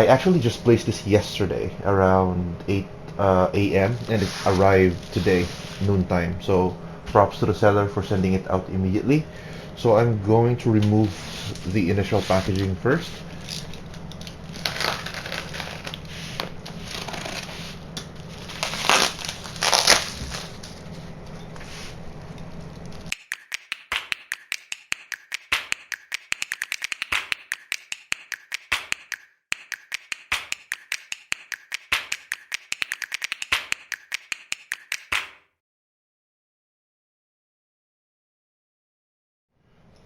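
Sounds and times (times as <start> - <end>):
plastic packaging rustling and crinkling: 3.8 - 5.9, 11.0 - 23.1.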